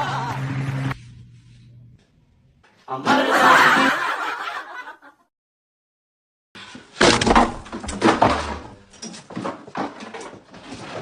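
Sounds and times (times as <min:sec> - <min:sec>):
burst of laughter: 0:03.1 - 0:05.2.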